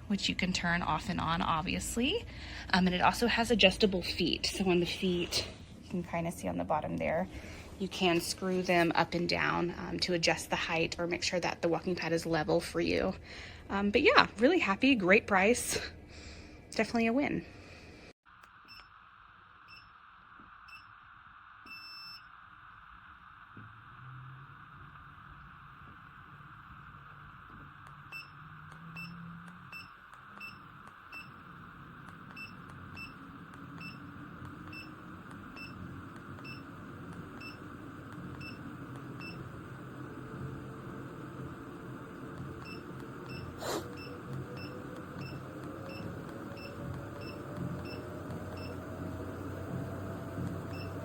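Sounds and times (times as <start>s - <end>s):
treadmill motor hum and whine: 0.0s - 16.4s, 18.6s - 51.0s
light regular ticking: 26.9s - 51.0s.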